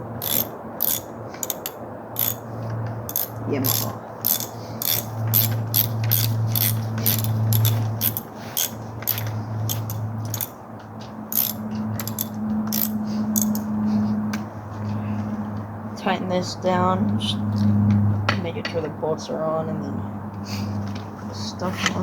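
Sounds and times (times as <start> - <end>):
steady low hum: 0.0 - 22.0
ratchet wrench clicking: 0.1 - 10.6, 11.3 - 13.8.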